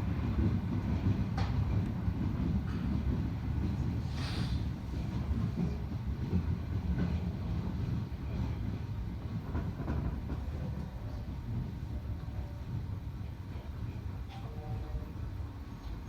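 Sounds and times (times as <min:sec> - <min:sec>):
train wheels rumbling on rail: 0:00.0 - 0:16.0
brief hiss: 0:04.1 - 0:04.7.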